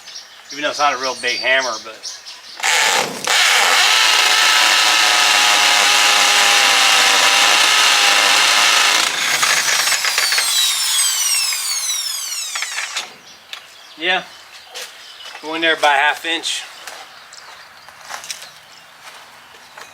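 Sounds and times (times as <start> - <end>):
drill motor winding down: 2.6 - 13.2
hammer drill boring into concrete: 2.6 - 13.2.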